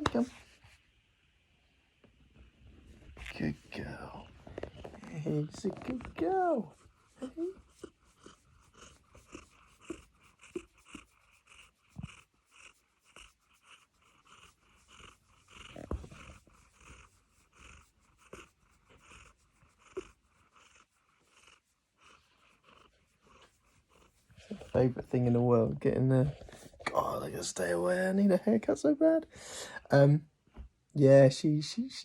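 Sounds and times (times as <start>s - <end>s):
cat whimpering and panting: 3.1s - 25.4s.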